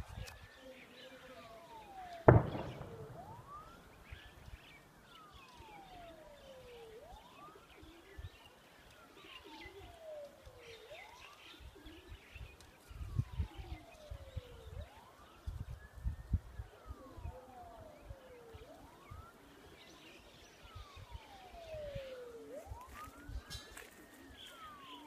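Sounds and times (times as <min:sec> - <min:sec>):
siren wailing: 0:00.0 - 0:25.0
birds chirping faintly: 0:00.1 - 0:22.4
distant explosion bang: 0:02.3 - 0:04.1.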